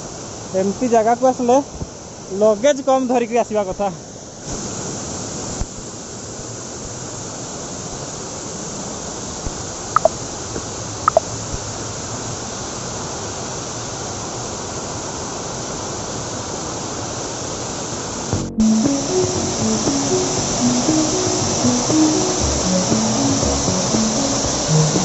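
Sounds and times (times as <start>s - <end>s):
waterfall rushing: 18.2s - 25.0s.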